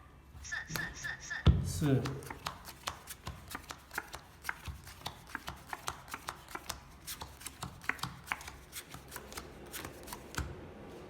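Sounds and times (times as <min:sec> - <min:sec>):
playing cards dealt onto a table: 0:01.8 - 0:10.5.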